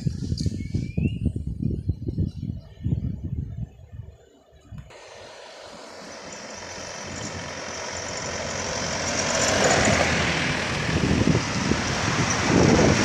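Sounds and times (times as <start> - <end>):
heavy vehicle engine and tyres: 4.9 - 13.0.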